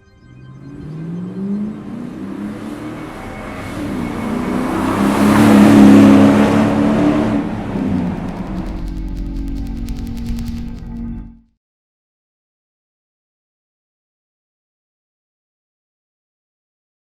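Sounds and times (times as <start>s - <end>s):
car engine accelerating: 0.1s - 11.4s.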